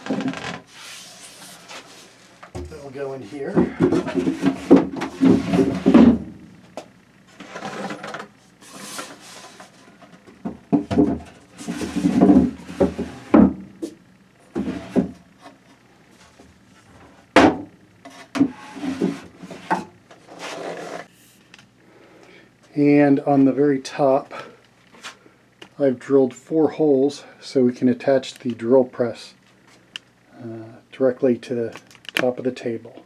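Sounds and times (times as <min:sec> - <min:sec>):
wooden drawers rubbing: 0:03.6 - 0:06.3, 0:11.0 - 0:13.6, 0:18.4 - 0:21.1.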